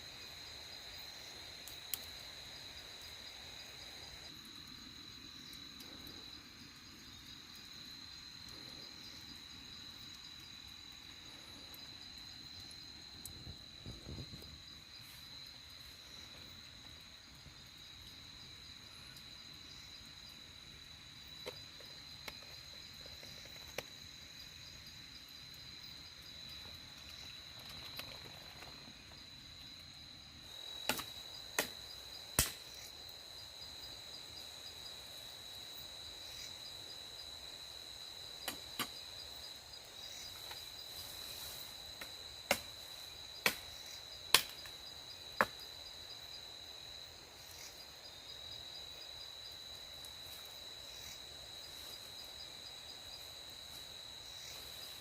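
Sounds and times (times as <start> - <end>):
crickets chirring: 0.0 - 55.0
sharp knocks or cracks: 30.8 - 31.8, 32.4 - 32.6.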